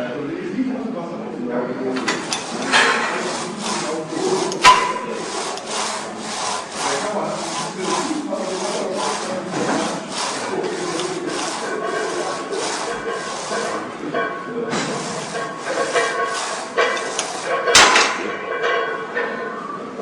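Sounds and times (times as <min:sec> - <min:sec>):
rhythmic rasping strokes: 0:02.0 - 0:18.3.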